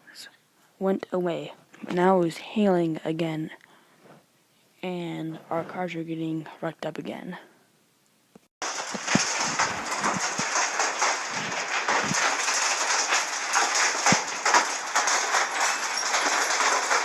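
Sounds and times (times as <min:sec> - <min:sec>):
steady hiss: 0:08.6 - 0:15.6
hail clattering: 0:08.6 - 0:17.0
loud hail knocks: 0:08.6 - 0:17.0.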